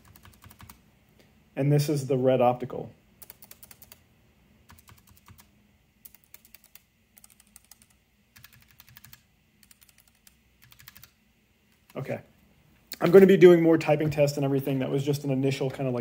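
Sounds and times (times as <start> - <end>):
keyboard typing clicks: 0.0 - 0.8, 3.2 - 4.0, 4.7 - 11.2.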